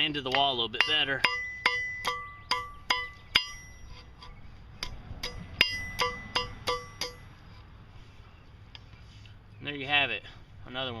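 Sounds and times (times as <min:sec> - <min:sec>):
hammer ringing on steel anvil: 0:00.1 - 0:03.9, 0:04.8 - 0:07.3.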